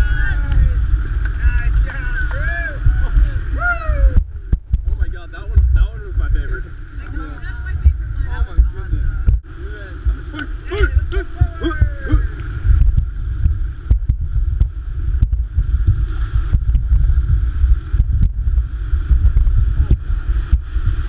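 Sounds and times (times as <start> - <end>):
whitewater rushing: 0.0 - 4.2, 5.2 - 13.5
wind buffeting microphone: 0.0 - 21.0
person calling out: 10.6 - 12.4.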